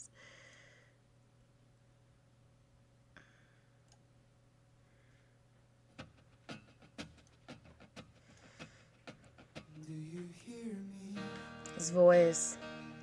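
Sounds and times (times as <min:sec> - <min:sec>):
faint steady hum: 0:00.0 - 0:06.4.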